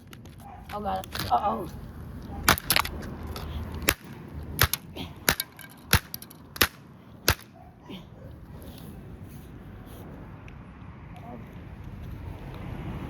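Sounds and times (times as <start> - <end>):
hammer striking toy car: 3.8 - 7.5.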